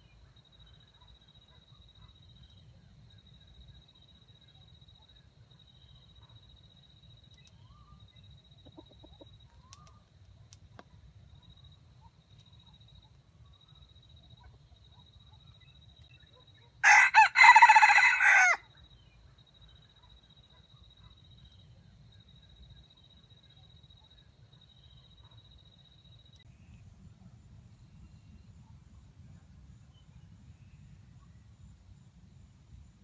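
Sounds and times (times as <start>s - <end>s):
rooster crowing: 16.8s - 18.6s.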